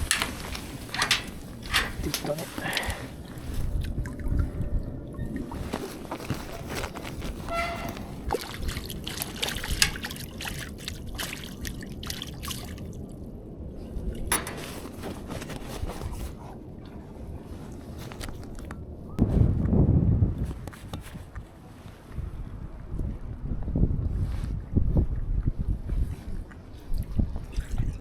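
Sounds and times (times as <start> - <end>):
clicks and knocks of tackle: 0.0 - 3.9, 5.6 - 10.2, 14.3 - 16.4
water splashing and trickling: 0.0 - 16.3, 27.0 - 28.0.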